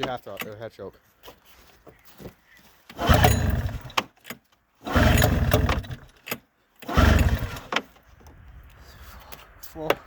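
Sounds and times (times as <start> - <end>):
snowmobile engine cranking and firing: 2.8 - 8.1.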